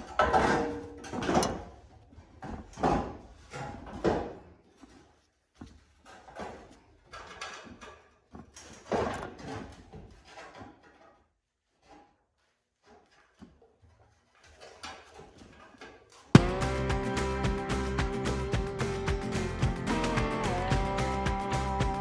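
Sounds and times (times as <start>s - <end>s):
metal clunks and scrapes: 0.1s - 1.8s.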